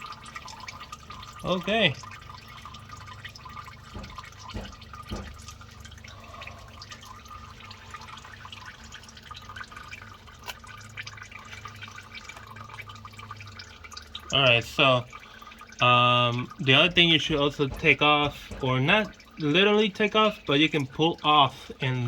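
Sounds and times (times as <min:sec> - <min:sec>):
oil trickling into drain pan: 0:00.0 - 0:22.0
short knocks: 0:03.9 - 0:05.5, 0:17.0 - 0:19.2.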